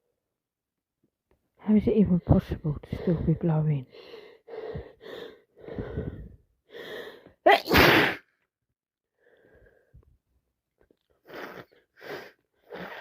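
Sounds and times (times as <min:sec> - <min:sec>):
woman breathing: 0:02.8 - 0:07.4, 0:09.2 - 0:10.1
woman sneezing loudly: 0:07.5 - 0:08.3.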